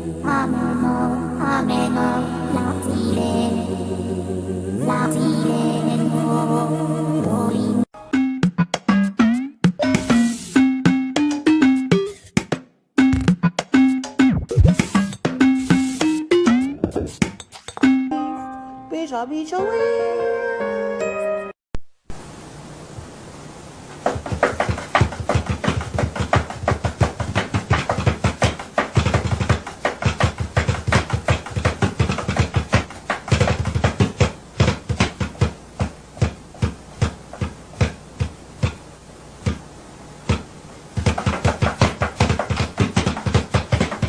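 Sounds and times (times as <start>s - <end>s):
sharp rapid taps: 24.0s - 38.8s, 41.0s - 44.0s.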